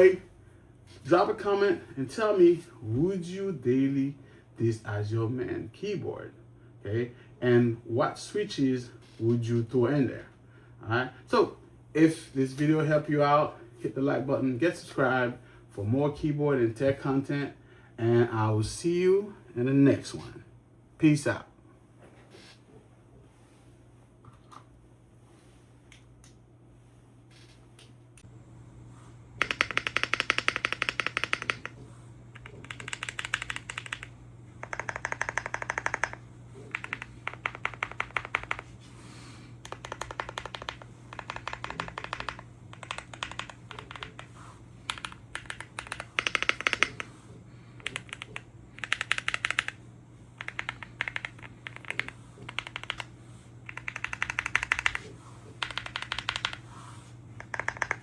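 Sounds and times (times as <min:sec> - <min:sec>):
low steady hum: 0:00.0 - 0:58.0
mechanical keyboard typing: 0:29.4 - 0:38.7, 0:39.6 - 0:44.3, 0:44.9 - 0:47.1, 0:47.8 - 0:49.8, 0:50.4 - 0:53.1, 0:53.7 - 0:56.6, 0:57.4 - 0:58.0.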